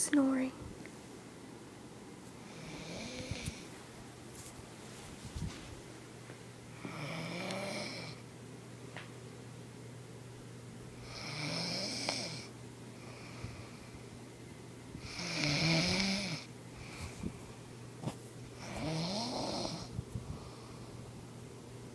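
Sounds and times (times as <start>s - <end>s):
woman snoring: 2.4s - 3.7s, 6.8s - 8.2s, 11.0s - 13.8s, 15.0s - 16.5s, 18.6s - 19.9s.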